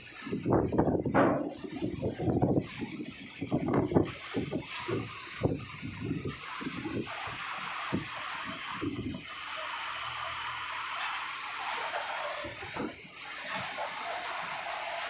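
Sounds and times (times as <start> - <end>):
wind buffeting microphone: 0.0 - 9.3.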